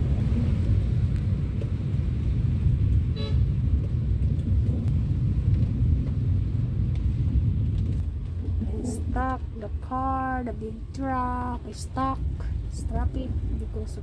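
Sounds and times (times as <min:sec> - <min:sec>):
road traffic rumble: 0:00.0 - 0:14.0
vehicle horn toot: 0:03.1 - 0:03.5.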